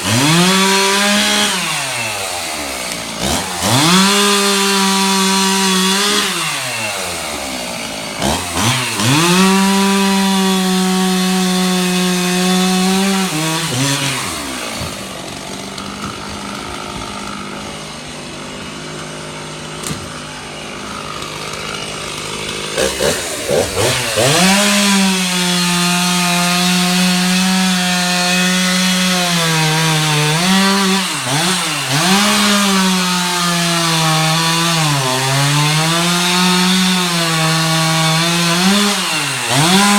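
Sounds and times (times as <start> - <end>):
chainsaw cutting: 0.0 - 39.9.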